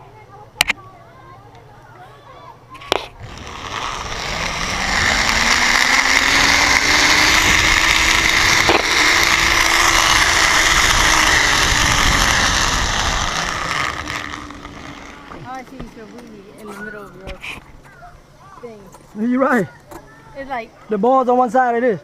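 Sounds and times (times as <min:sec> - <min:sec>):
zipline pulleys whirring: 0:02.8 - 0:17.0.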